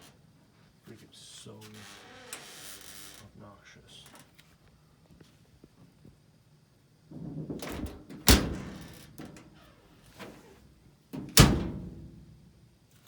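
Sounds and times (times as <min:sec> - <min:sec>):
dryer rumbling clatter: 0:07.0 - 0:12.6
clothes dryer banging: 0:07.1 - 0:09.5, 0:11.2 - 0:12.5.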